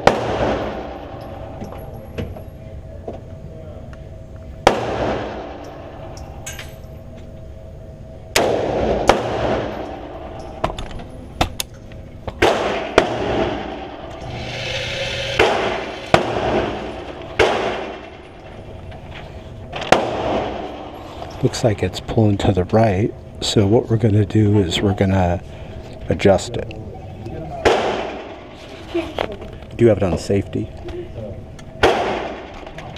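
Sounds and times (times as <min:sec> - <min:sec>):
pistol shots with ringing tail: 0:00.0 - 0:02.0, 0:04.6 - 0:06.9, 0:08.3 - 0:10.6, 0:12.4 - 0:14.0, 0:15.4 - 0:18.7, 0:19.8 - 0:21.0, 0:27.6 - 0:28.5, 0:31.8 - 0:32.6.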